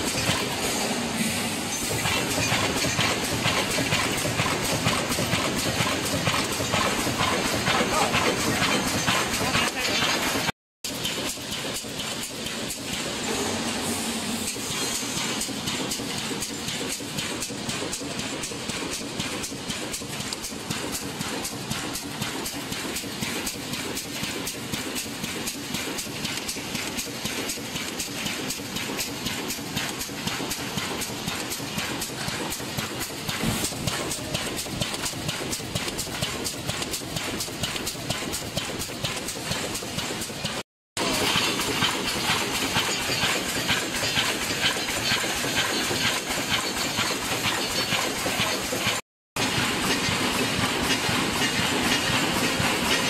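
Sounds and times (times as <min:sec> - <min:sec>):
welding machine clattering: 0:00.0 - 0:00.7, 0:01.7 - 0:13.5, 0:14.5 - 0:53.0.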